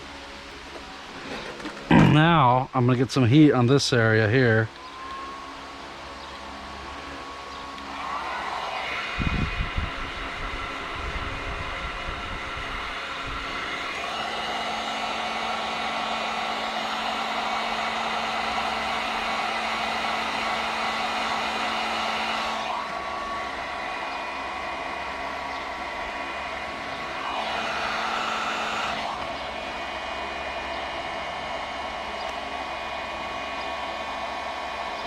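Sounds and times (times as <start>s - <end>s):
hot-air blower rushing: 0.0s - 2.6s, 4.3s - 35.0s.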